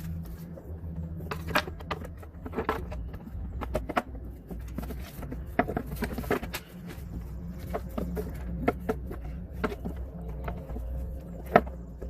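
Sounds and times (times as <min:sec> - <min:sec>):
low steady hum: 0:00.0 - 0:12.0.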